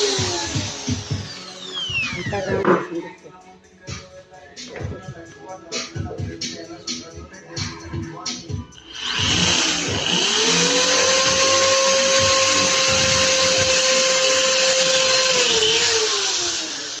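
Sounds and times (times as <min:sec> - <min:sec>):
electric drill motor whine: 0:00.0 - 0:02.7, 0:08.8 - 0:17.0.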